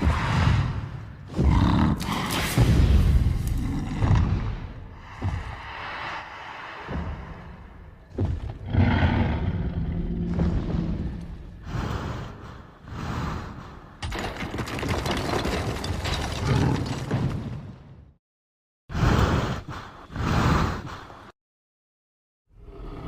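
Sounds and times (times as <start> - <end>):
dinosaur roars and growls: 0.0 - 2.6, 3.2 - 5.6, 8.5 - 12.2, 22.5 - 23.0.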